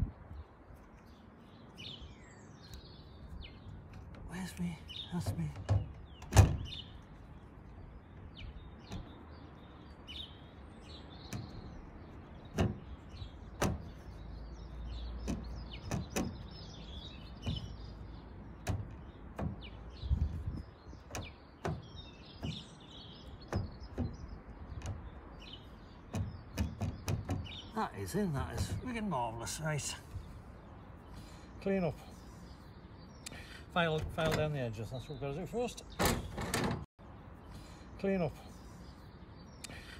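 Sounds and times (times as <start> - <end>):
birds chirping faintly: 0.0 - 39.9
sharp knocks and clicks: 5.2 - 6.8, 8.2 - 9.3, 11.2 - 16.5, 17.2 - 27.7, 35.9 - 36.9.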